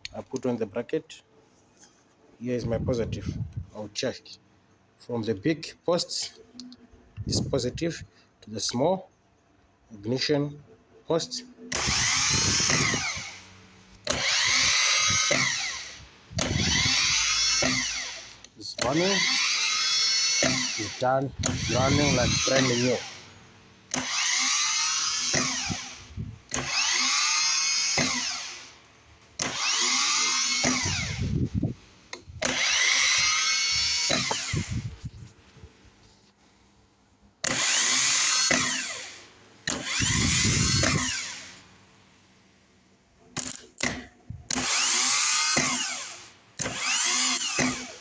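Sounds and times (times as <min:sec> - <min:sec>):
starter motor whine: 0:11.7 - 0:23.3, 0:23.9 - 0:28.8, 0:29.4 - 0:35.0, 0:37.4 - 0:41.6, 0:44.5 - 0:48.0.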